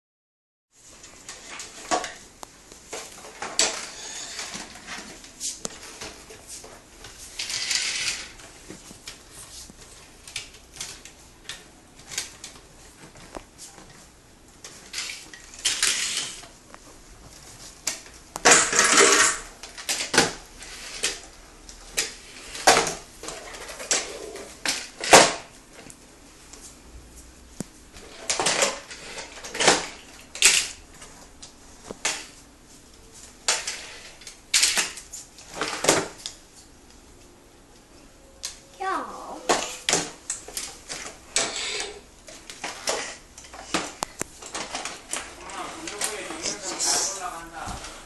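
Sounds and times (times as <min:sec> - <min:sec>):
mop scraping swishes: 0:45.3 - 0:48.0.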